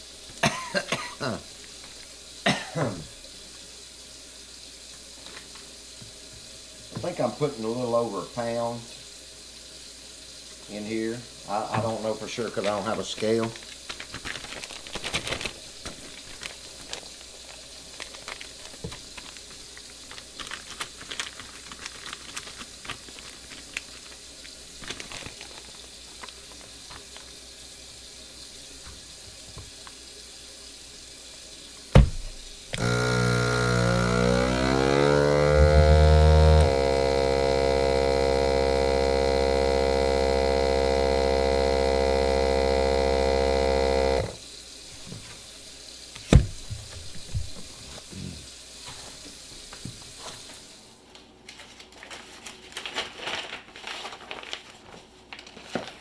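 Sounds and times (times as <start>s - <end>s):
plastic bag rustling: 12.6s - 27.4s, 51.5s - 56.0s
vacuum sealer closing click: 32.0s - 44.4s
vacuum pump humming: 32.0s - 45.2s.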